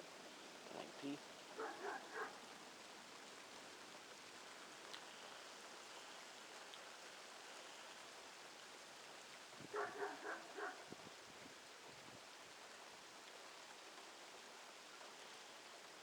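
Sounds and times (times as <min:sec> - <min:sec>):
rain pattering: 0:00.0 - 0:16.0
dog barking: 0:01.6 - 0:02.4, 0:09.7 - 0:10.9.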